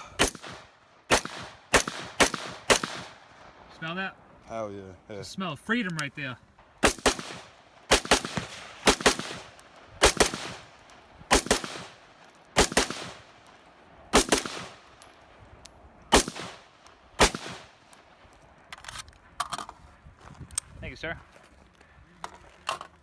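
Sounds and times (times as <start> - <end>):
gunshots with echo: 0.0 - 3.5, 6.8 - 13.4, 14.1 - 15.0, 16.1 - 17.8.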